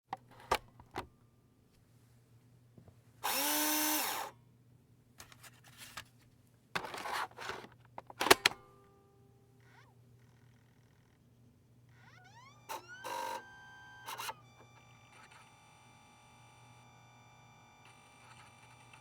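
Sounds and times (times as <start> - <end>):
drive motor whine: 11.9 - 19.0.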